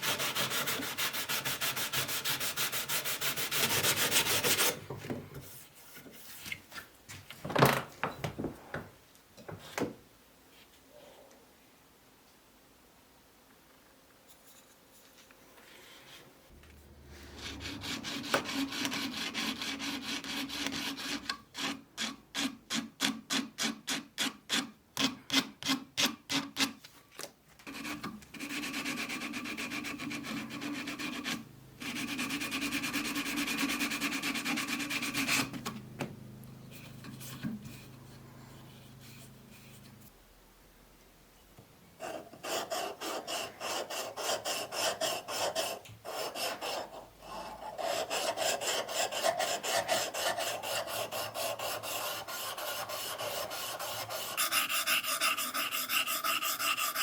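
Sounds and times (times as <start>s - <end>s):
sanding strokes on a surface: 0.0s - 4.8s, 17.2s - 21.7s, 27.7s - 35.5s, 42.0s - 57.0s.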